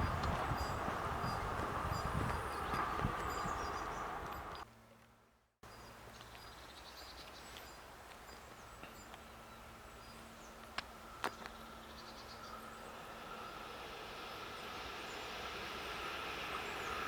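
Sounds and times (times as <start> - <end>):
birds and insects chirping: 0.0 - 4.7, 5.6 - 17.0
steady hiss: 12.0 - 17.0.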